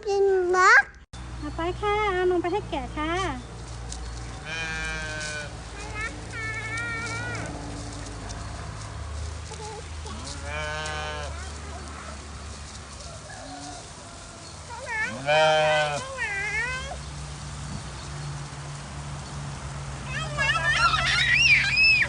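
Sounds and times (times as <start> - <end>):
sheep bleating: 4.4 - 5.6, 10.1 - 11.5, 14.9 - 16.7.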